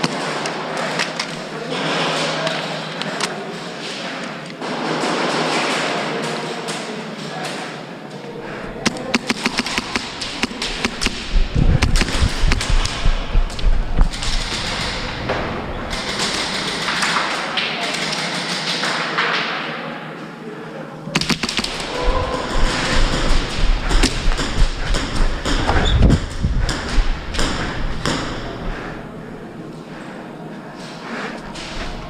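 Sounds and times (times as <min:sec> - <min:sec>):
sharp cracks and knocks: 0:08.8 - 0:19.5, 0:21.2 - 0:29.0
heavy low rumble: 0:09.6 - 0:17.0, 0:21.2 - 0:30.0.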